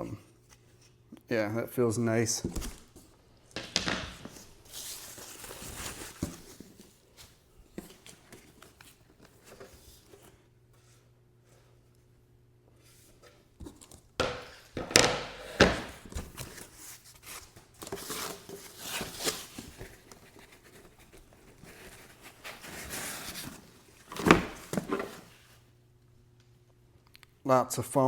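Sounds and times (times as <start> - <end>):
foam packing rustling and scraping: 3.7 - 11.1, 15.4 - 25.6.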